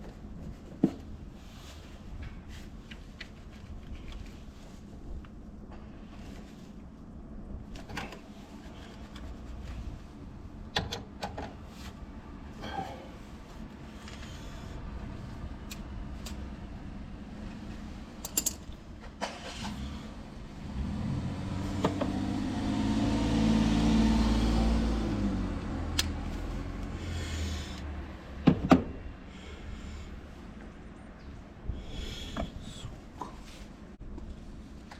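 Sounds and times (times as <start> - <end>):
handling clicks and knocks: 18.2 - 18.8.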